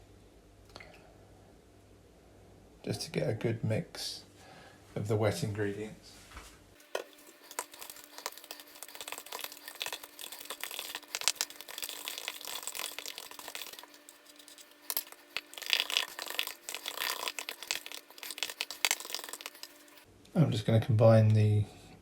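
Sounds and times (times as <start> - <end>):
utensil beating in mixing bowl: 6.8 - 20.1.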